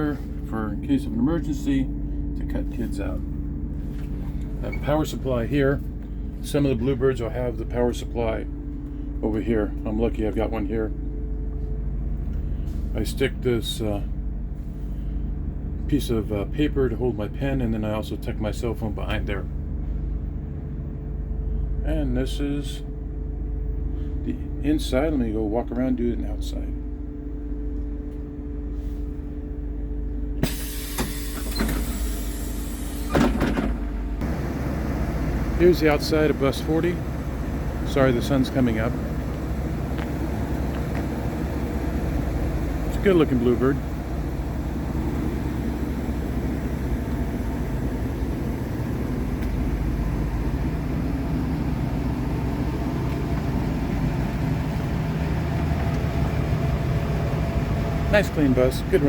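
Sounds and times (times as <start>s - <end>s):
bus engine humming: 0.0s - 59.0s
loud hiss: 30.4s - 33.3s.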